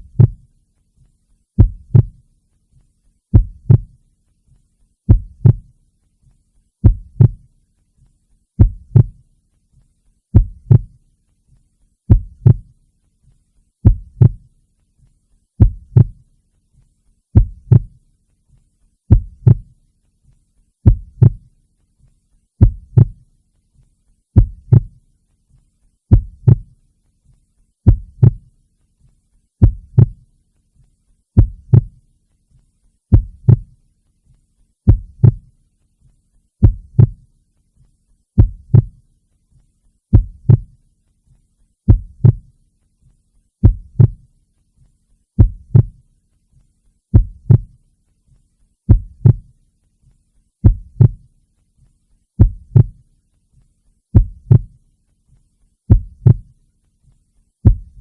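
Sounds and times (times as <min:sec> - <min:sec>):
heartbeat: 0:00.0 - 0:00.5, 0:01.6 - 0:02.3, 0:03.3 - 0:04.1, 0:05.1 - 0:05.8, 0:06.8 - 0:07.5, 0:08.6 - 0:09.3, 0:10.3 - 0:11.0, 0:12.1 - 0:12.8, 0:13.8 - 0:14.5, 0:15.6 - 0:16.3, 0:17.3 - 0:18.0, 0:19.1 - 0:19.8, 0:20.8 - 0:21.5, 0:22.6 - 0:23.3, 0:24.4 - 0:25.0, 0:26.1 - 0:26.8, 0:27.8 - 0:28.5, 0:29.6 - 0:30.3, 0:31.4 - 0:32.0, 0:33.1 - 0:33.8, 0:34.9 - 0:35.6, 0:36.6 - 0:37.3, 0:38.4 - 0:39.0, 0:40.1 - 0:40.8, 0:41.9 - 0:42.6, 0:43.6 - 0:44.3, 0:45.4 - 0:46.0, 0:47.1 - 0:47.8, 0:48.9 - 0:49.5, 0:50.6 - 0:51.3, 0:52.4 - 0:53.0, 0:54.1 - 0:54.8, 0:55.9 - 0:56.6, 0:57.6 - 0:58.0.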